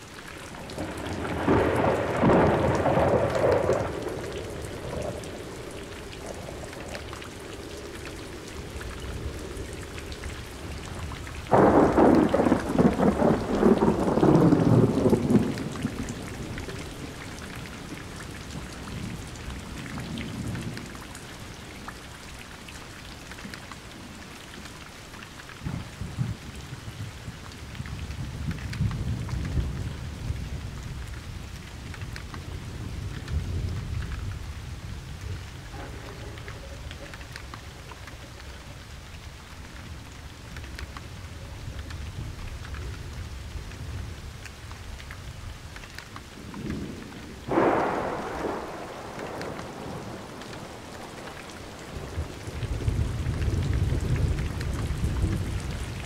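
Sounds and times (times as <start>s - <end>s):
steady rain falling: 0.0s - 56.0s
thunder rumbling: 0.3s - 21.1s, 25.6s - 56.0s
sharp thunder crack: 0.8s - 5.5s, 11.5s - 16.0s, 46.7s - 51.3s.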